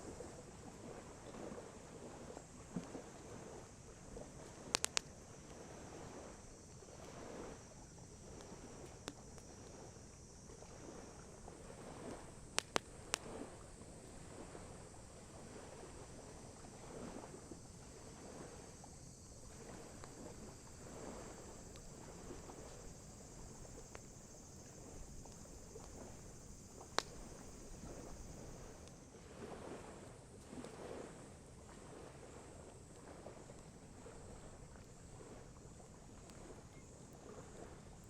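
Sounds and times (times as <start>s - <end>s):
soft wash: 0.0s - 38.0s
campfire crackling and popping: 4.6s - 5.2s, 12.1s - 13.6s, 19.9s - 29.0s.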